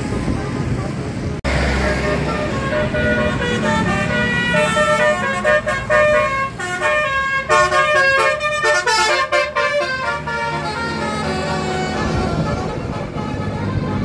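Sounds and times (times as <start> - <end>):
low engine rumble: 0.0 - 14.0
bus musical horn melody: 0.2 - 14.0.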